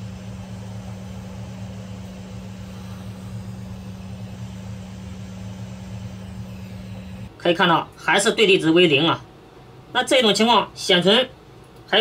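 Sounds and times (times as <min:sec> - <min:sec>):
hot-air gun droning: 0:00.0 - 0:07.3.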